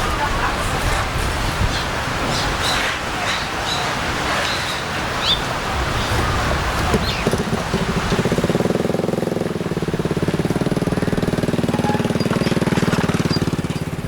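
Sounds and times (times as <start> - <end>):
small engine running: 7.0 - 14.0.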